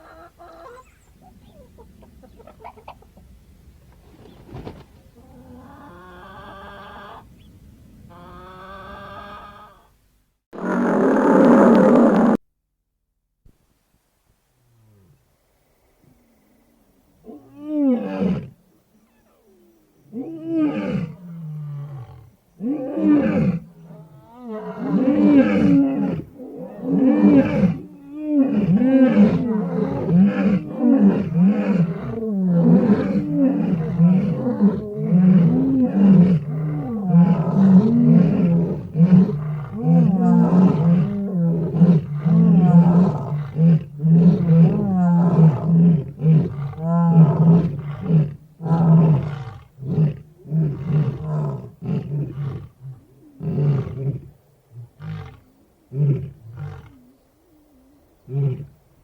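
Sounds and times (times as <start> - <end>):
big cat roaring: 20.2 - 54.3.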